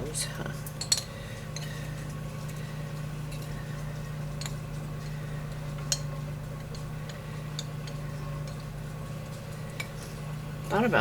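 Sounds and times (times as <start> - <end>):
steady low hum: 0.0 - 11.0
utensils clicking against dishes: 0.6 - 2.6, 4.3 - 10.1.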